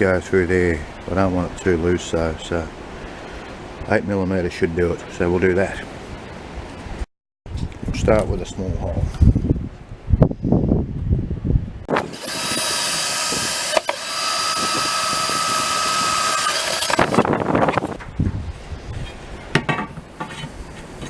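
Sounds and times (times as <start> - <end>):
electric drill running: 11.9 - 18.0.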